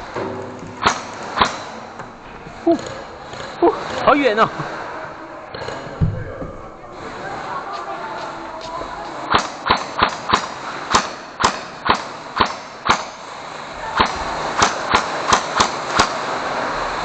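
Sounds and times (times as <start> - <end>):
toy gun snaps: 9.3 - 13.2, 14.0 - 16.2.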